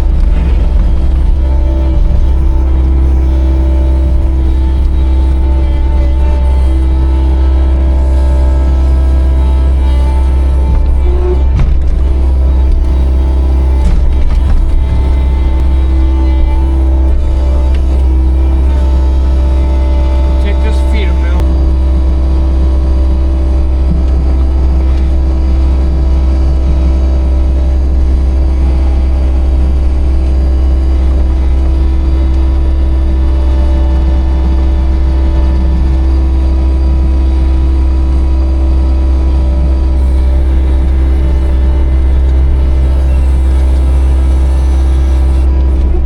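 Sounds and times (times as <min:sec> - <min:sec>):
skid loader engine droning: 0:00.0 - 0:46.0.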